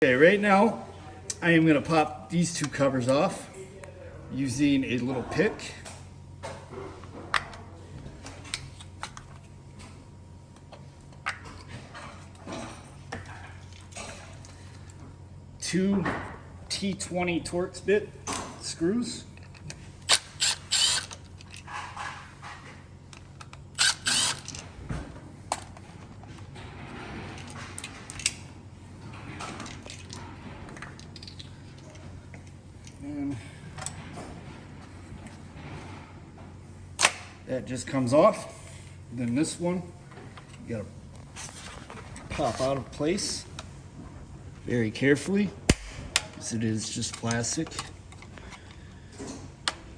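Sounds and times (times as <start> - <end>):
clicks and metallic clinks of parts: 19.3 - 24.7, 27.4 - 28.4, 29.4 - 33.0, 45.7 - 49.8.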